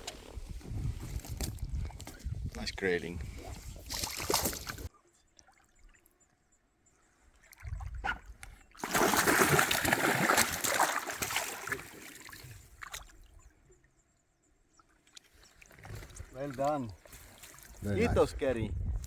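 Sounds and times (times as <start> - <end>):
river water splashing: 8.8 - 13.2, 15.0 - 17.8.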